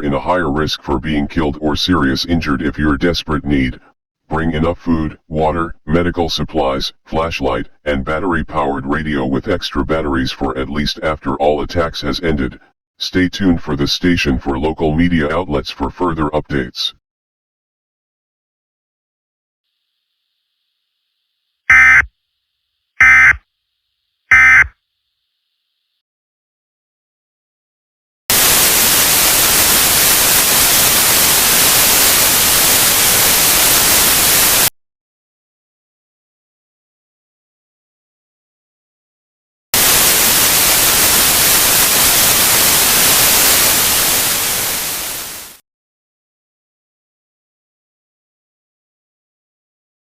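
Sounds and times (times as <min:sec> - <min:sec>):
buzzing digital data bursts: 0:21.7 - 0:22.1, 0:23.0 - 0:23.4, 0:24.3 - 0:24.8
loud static hiss: 0:28.3 - 0:34.7, 0:39.8 - 0:45.6.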